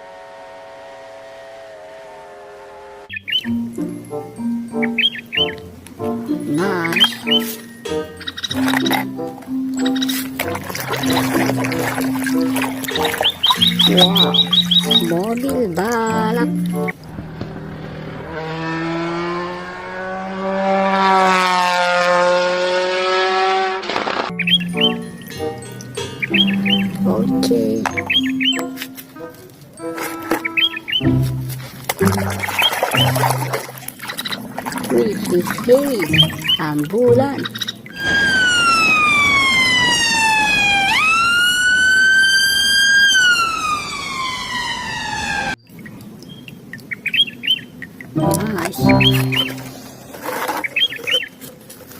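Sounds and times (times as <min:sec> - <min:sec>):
race car engine revving: 0:00.0 - 0:03.1, 0:16.7 - 0:24.3
ambulance siren wailing: 0:37.9 - 0:45.6.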